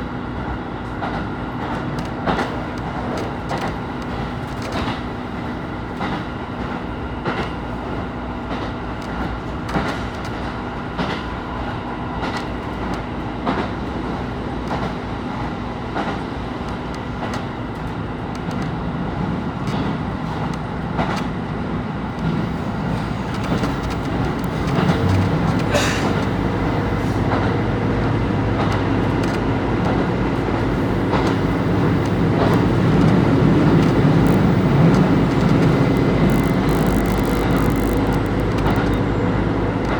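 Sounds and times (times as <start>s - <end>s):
train running hum: 0.0s - 39.9s
wheels clicking over rail joints: 19.6s - 39.1s.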